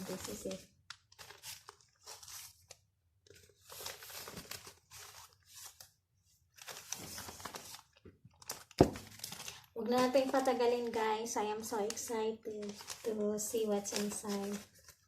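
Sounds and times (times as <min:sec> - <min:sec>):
gift wrapping crinkling and tearing: 0:00.0 - 0:15.0.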